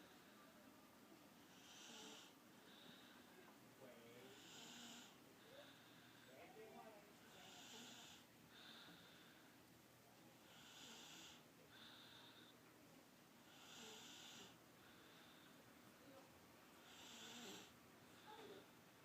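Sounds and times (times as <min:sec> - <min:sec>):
baby snoring softly: 0:01.5 - 0:03.1, 0:04.2 - 0:06.5, 0:07.3 - 0:09.1, 0:10.4 - 0:12.4, 0:13.5 - 0:14.6, 0:16.8 - 0:18.7.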